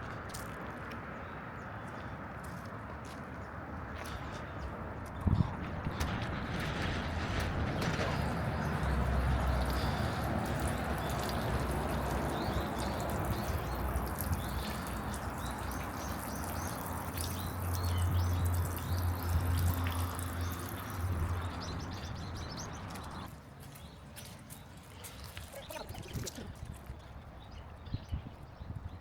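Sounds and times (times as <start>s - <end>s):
outdoor background noise: 0.0s - 29.0s
small birds chirping: 4.0s - 29.0s
low rumble: 5.2s - 11.7s.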